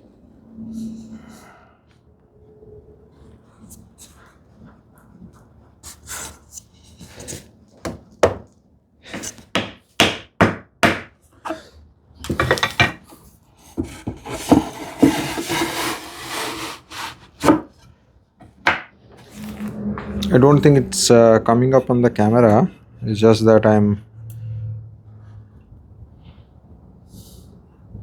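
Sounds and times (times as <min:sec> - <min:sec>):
wood rubbing and scraping: 0:12.3 - 0:17.8.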